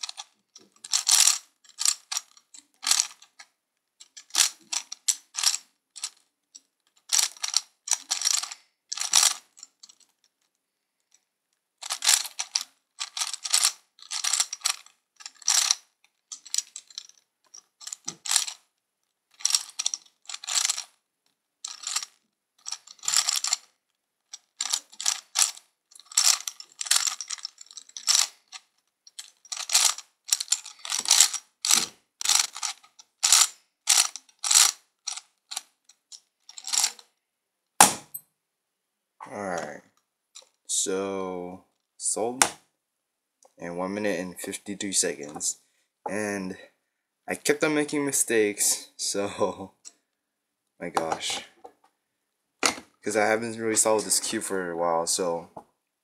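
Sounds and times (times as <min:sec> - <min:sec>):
plastic puzzle gears clicking: 0:00.0 - 0:06.3, 0:06.9 - 0:10.1, 0:11.8 - 0:18.7, 0:19.3 - 0:21.0, 0:21.7 - 0:23.7, 0:24.3 - 0:37.0.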